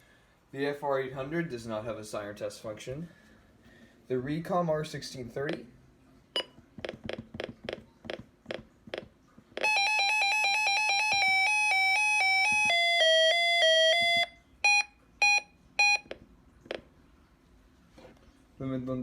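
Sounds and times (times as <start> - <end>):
short beeps: 14.0 - 16.1.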